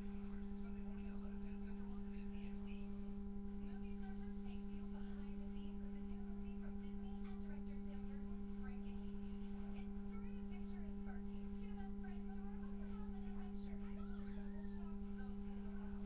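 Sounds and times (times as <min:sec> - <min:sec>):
faint muffled voices: 0:00.0 - 0:16.0
steady low hum: 0:00.0 - 0:16.0.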